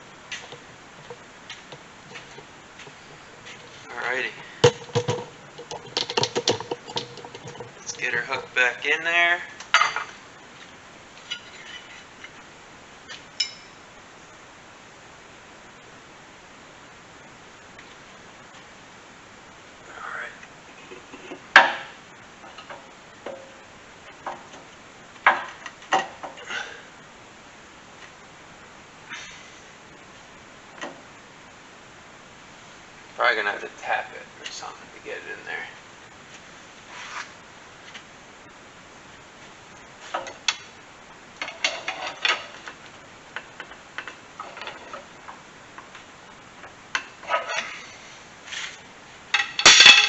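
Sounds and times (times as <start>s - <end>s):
metal clanks and knocks: 0.4s - 8.6s, 49.4s - 50.0s
loud knocks: 4.6s - 8.5s.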